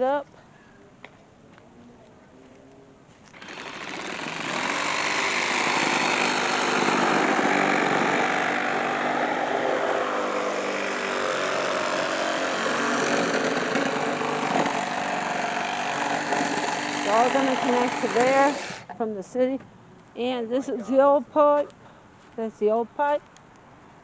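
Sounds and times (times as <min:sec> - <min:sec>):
small engine running: 0:03.4 - 0:18.9.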